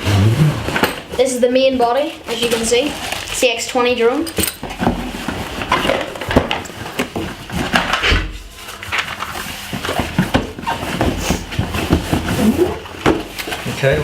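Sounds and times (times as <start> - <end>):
packaging rustling: 2.3 - 3.6.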